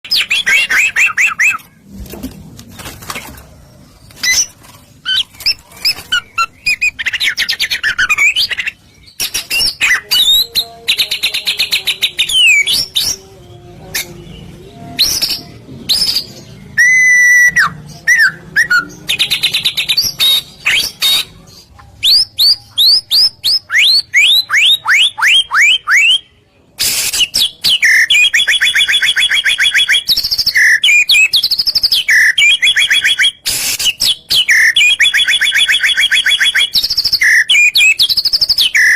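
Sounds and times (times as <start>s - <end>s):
songbird trills and whistles: 22.0s - 38.9s.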